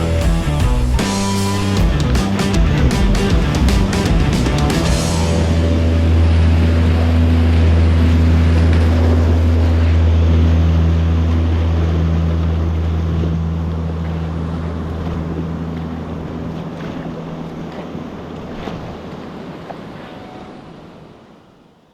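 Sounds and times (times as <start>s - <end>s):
motorboat engine humming: 0.0s - 21.5s
waves on water: 3.9s - 21.8s
wind: 4.4s - 21.9s.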